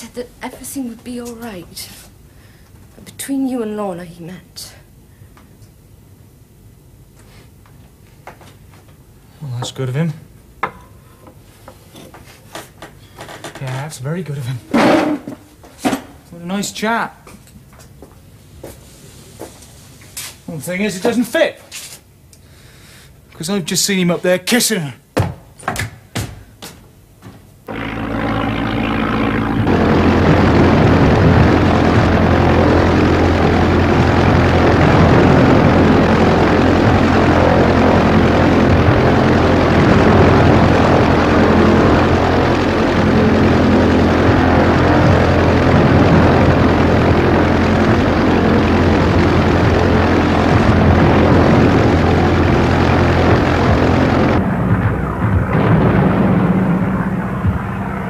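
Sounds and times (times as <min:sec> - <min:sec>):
propeller aircraft engine: 0:27.7 - 0:58.0.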